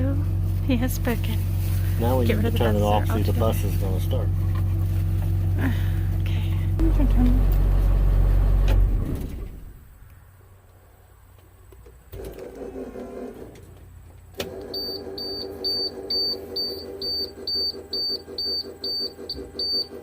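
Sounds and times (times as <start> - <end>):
steady electrical hum: 0.0 - 8.6.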